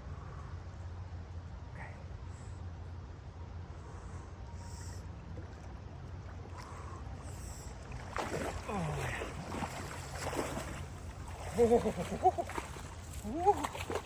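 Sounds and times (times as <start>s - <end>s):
water sloshing in a tub: 7.7s - 14.0s.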